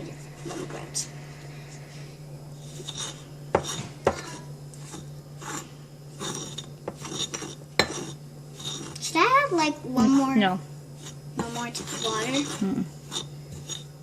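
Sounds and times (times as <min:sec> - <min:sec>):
spoon stirring dough in bowl: 0:02.6 - 0:09.2, 0:11.0 - 0:14.0.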